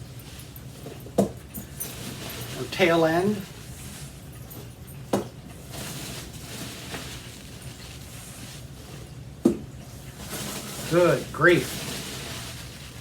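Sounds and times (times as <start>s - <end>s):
packing peanuts rustling: 5.7s - 8.9s, 10.1s - 13.0s.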